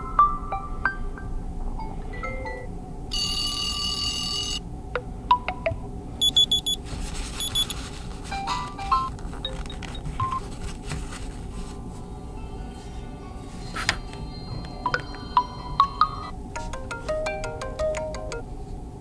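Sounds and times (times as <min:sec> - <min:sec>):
quick high beeps: 0:06.2 - 0:06.8
short melodic ringtone phrases: 0:14.1 - 0:18.5.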